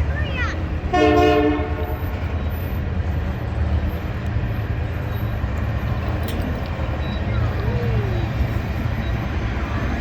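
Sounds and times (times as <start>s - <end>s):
train rumbling: 0.0s - 10.0s
train horn: 0.9s - 2.0s.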